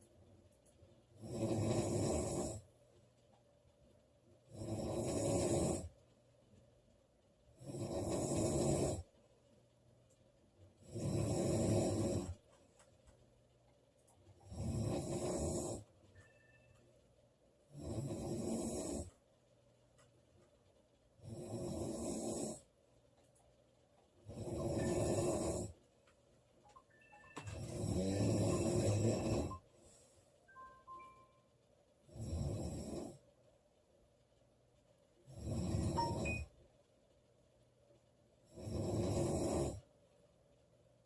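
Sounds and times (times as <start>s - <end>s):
woman snoring: 1.2s - 2.6s, 4.5s - 5.9s, 7.6s - 9.1s, 10.8s - 12.4s, 14.4s - 15.8s, 17.7s - 19.1s, 21.2s - 22.6s, 24.3s - 25.8s, 27.4s - 29.6s, 32.1s - 33.2s, 35.3s - 36.5s, 38.5s - 39.8s.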